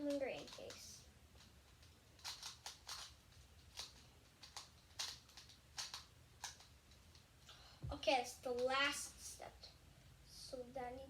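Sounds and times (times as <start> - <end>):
puzzle cube layers clicking: 0.0 - 7.2.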